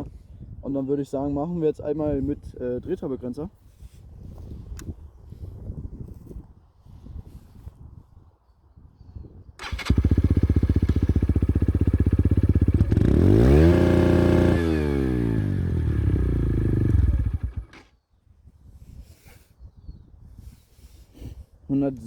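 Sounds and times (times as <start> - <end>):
motorcycle engine revving: 9.6 - 17.9.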